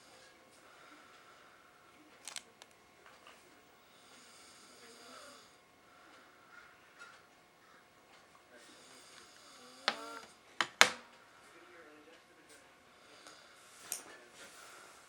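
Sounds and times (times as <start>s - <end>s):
man breathing with soft snore: 3.9s - 6.4s, 8.6s - 10.2s, 12.9s - 15.0s.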